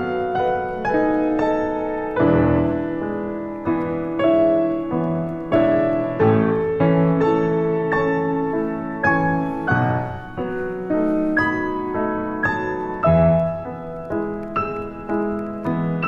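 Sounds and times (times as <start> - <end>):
gentle piano melody: 0.0 - 16.0.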